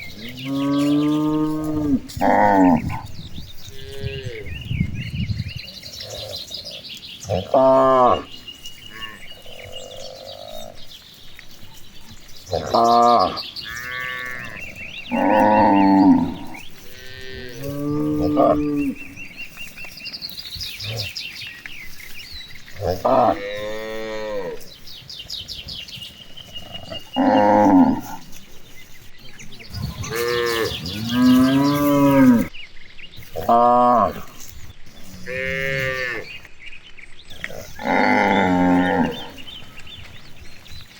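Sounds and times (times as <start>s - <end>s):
cows mooing: 0.0s - 4.6s, 7.3s - 10.8s, 12.5s - 19.3s, 22.8s - 24.8s, 26.5s - 28.3s, 29.7s - 32.5s, 35.0s - 36.4s, 37.3s - 39.6s.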